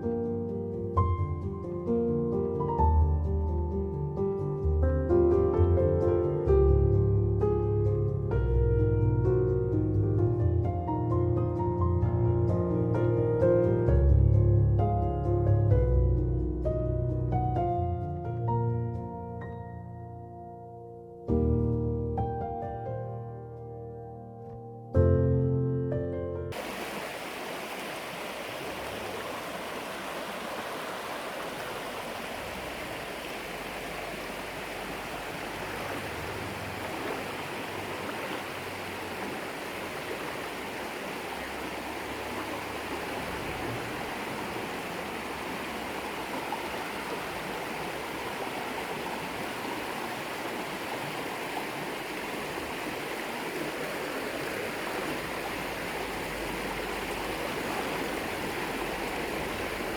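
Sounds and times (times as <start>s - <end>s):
river water flowing: 26.5s - 59.9s.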